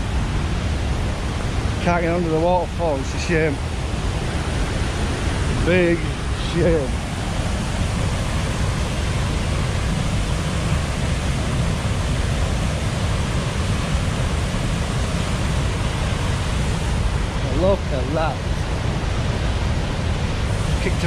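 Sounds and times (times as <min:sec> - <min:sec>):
waterfall roaring: 0:00.0 - 0:21.0.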